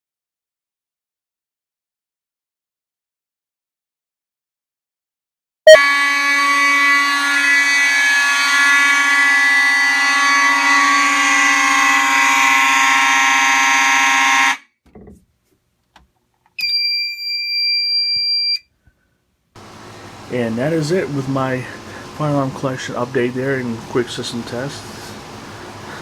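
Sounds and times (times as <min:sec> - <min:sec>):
fire alarms blaring: 0:05.7 - 0:14.6, 0:16.6 - 0:18.6
high-pitched electronic alarm tone: 0:05.7 - 0:14.6, 0:16.6 - 0:18.6.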